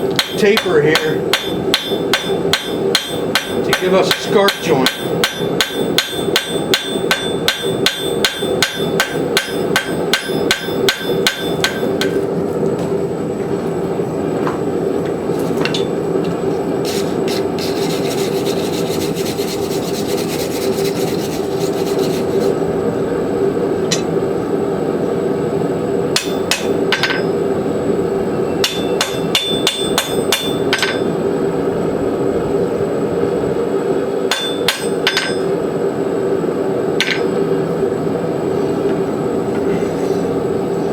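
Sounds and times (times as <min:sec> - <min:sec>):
steady hum: 0:00.0 - 0:40.9
hammer striking metal on anvil: 0:00.1 - 0:12.2, 0:26.1 - 0:27.3, 0:28.6 - 0:31.1, 0:34.3 - 0:35.5.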